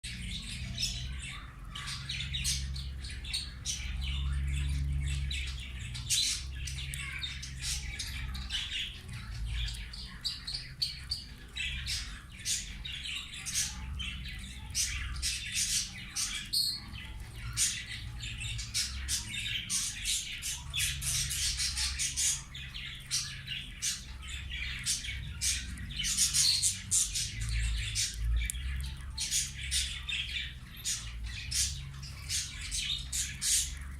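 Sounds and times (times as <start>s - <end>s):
budgerigars chattering and squawking: 0.1s - 33.9s.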